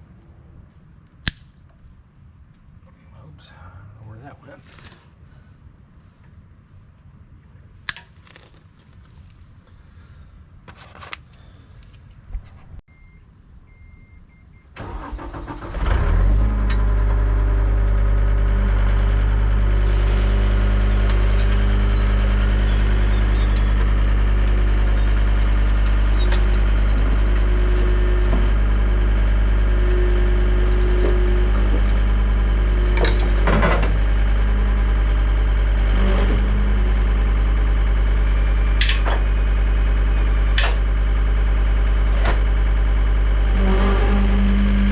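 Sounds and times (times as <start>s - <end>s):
short beeps: 12.9s - 14.7s
diesel engine starting and idling: 12.9s - 44.9s.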